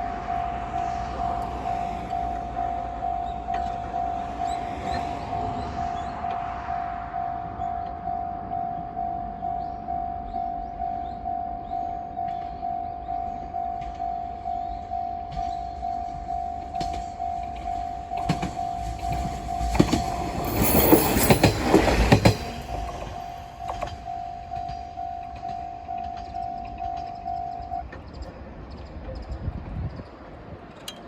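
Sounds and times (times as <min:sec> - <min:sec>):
level-crossing alarm bell: 0:00.0 - 0:28.0
train rumbling past: 0:00.0 - 0:31.0
train wheels clicking on rails: 0:13.4 - 0:29.4.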